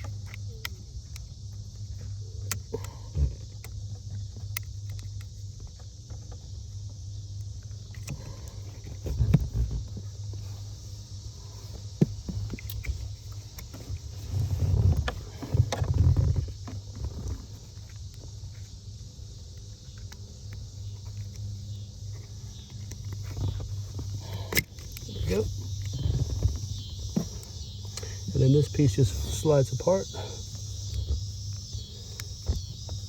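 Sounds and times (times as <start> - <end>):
steady low hum: 0.0 - 33.0
bumps and rustles: 7.6 - 28.5.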